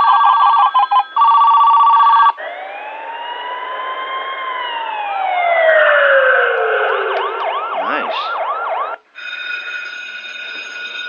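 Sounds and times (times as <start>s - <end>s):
telephone-like ring: 0.0s - 2.3s, 9.2s - 11.0s
rising and falling siren tone: 2.3s - 9.1s.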